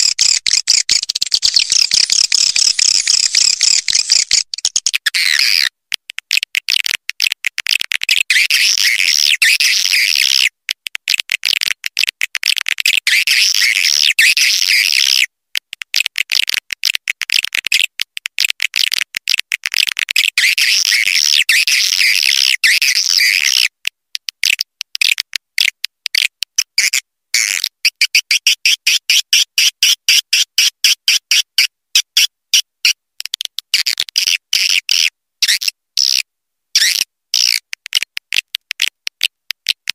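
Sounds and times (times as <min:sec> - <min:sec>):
swiftlet chirping: 0:00.0 - 0:05.0.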